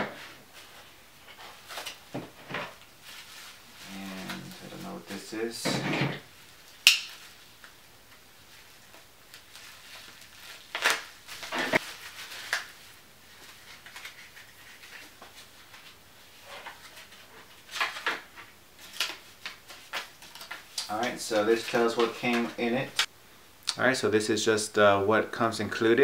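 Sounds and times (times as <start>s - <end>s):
paper rustling and crinkling: 0.6s - 5.3s, 8.5s - 22.9s.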